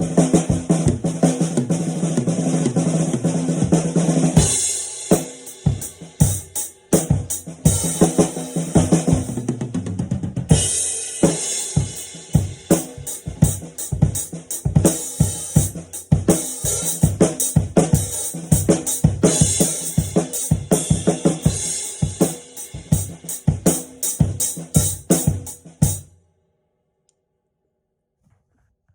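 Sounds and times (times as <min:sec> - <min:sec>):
snare drum: 0:00.0 - 0:26.1
kick drum: 0:11.8 - 0:26.1.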